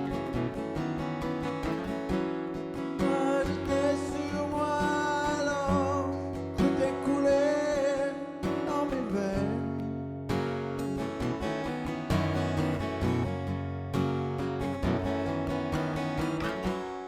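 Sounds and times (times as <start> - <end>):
acoustic guitar strumming: 0.0 - 17.0
man singing: 2.8 - 10.1.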